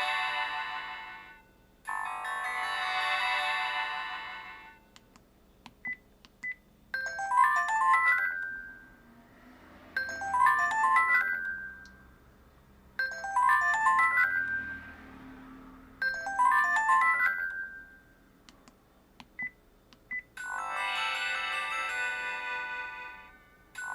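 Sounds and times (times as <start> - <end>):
synthesized ringtone notes: 7.0 - 9.0, 10.0 - 12.1, 13.0 - 15.0, 16.0 - 18.1, 20.4 - 23.1.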